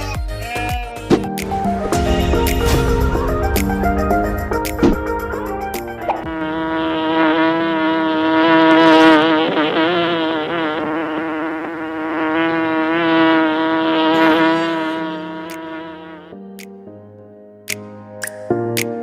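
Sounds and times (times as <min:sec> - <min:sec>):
insect buzzing: 0:04.4 - 0:16.4.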